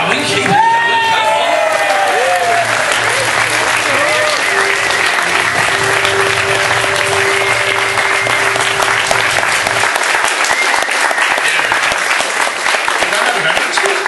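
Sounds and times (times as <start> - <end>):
audience applauding: 0.0 - 14.0
walk-on music: 2.5 - 11.5.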